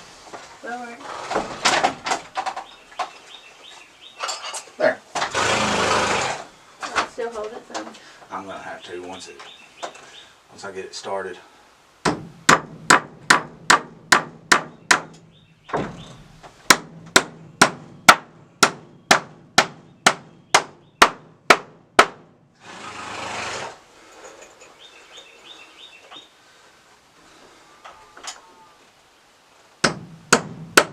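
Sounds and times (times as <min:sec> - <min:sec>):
hammer driving nail into wood: 0:12.0 - 0:15.2, 0:16.7 - 0:22.2, 0:29.8 - 0:30.9.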